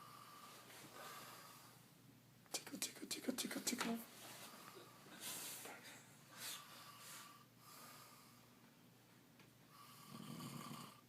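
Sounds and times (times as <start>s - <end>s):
man snoring: 9.8s - 11.0s.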